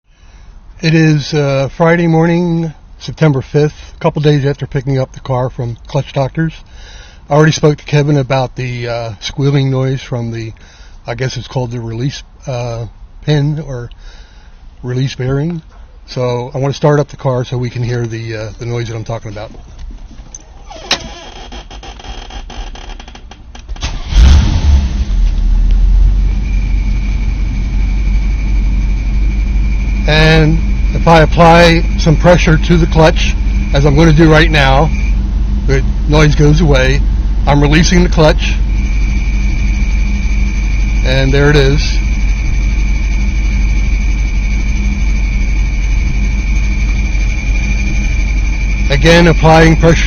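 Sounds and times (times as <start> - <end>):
car engine starting and idling: 0.2 - 21.8, 23.1 - 50.0.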